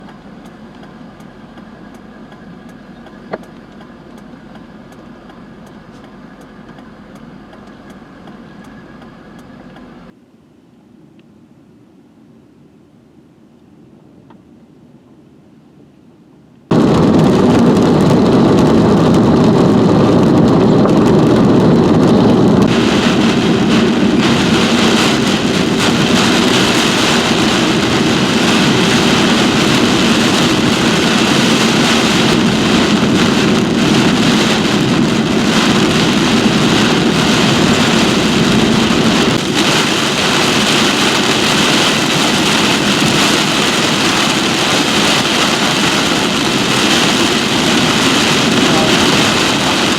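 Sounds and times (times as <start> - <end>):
road and engine noise: 0.0 - 49.9
heavy rain on a vehicle: 16.7 - 49.9.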